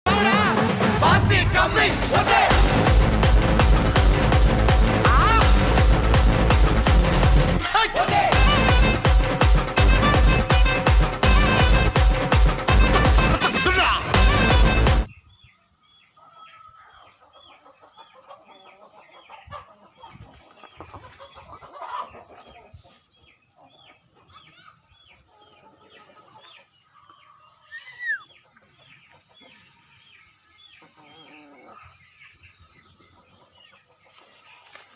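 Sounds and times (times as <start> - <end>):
chickens clucking softly: 16.0 - 34.9.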